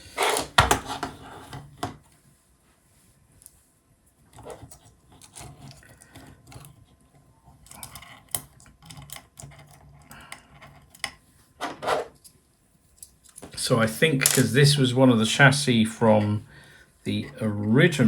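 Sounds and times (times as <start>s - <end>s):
plastic parts rubbing and knocking: 0.0s - 2.1s.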